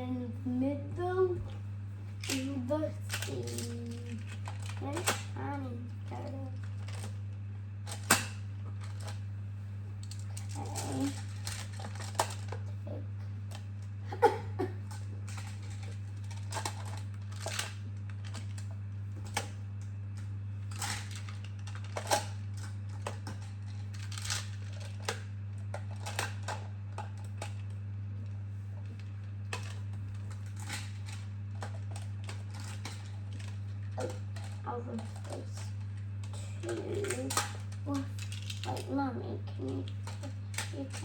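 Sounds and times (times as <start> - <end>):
steady low hum: 0.0 - 41.0.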